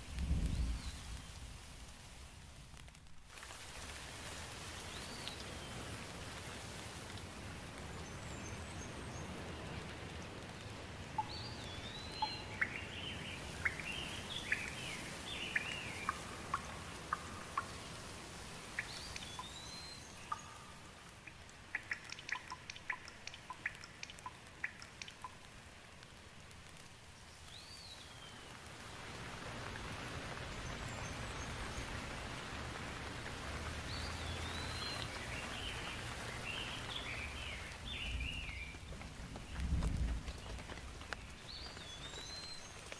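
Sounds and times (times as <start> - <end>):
steady rain falling: 0.0 - 42.9
sharp drips: 11.1 - 26.8
birds chirping: 11.2 - 18.0.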